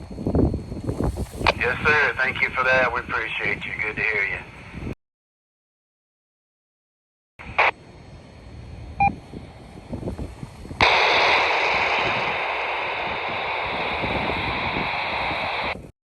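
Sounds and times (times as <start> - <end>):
radio static hiss: 0.8 - 5.0, 7.4 - 7.9, 8.6 - 15.9
burst of radio noise: 1.0 - 4.6, 7.4 - 7.8, 10.8 - 15.9.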